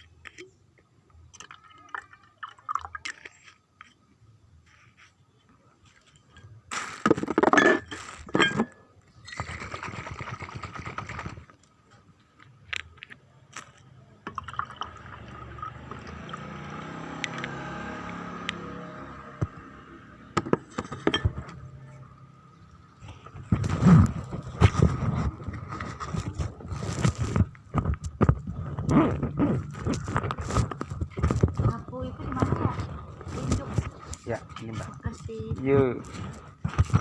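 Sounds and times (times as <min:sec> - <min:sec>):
water pouring into container: 0:01.3 - 0:03.6, 0:14.3 - 0:16.6
handling noises: 0:23.0 - 0:37.0.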